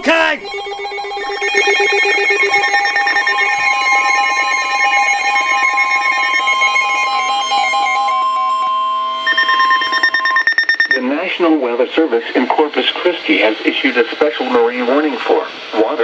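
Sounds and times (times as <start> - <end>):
electronic alarm beeping: 0.0 - 11.1.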